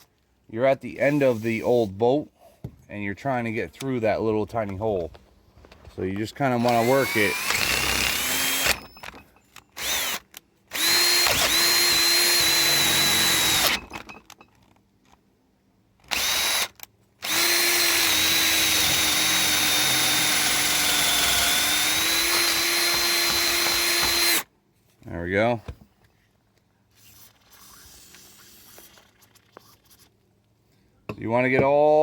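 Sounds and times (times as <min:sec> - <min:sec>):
electric drill running: 0:06.6 - 0:09.2, 0:09.8 - 0:14.1, 0:16.1 - 0:24.5.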